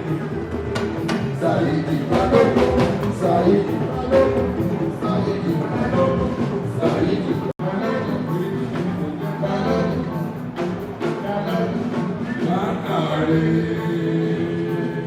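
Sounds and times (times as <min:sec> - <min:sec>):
live band music: 0:00.0 - 0:15.0.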